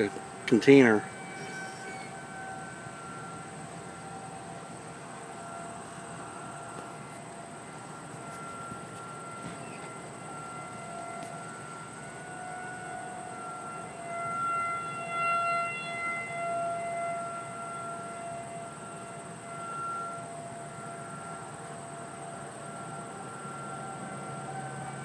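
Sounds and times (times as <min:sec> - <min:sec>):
warning siren steady tone: 0:00.0 - 0:25.0.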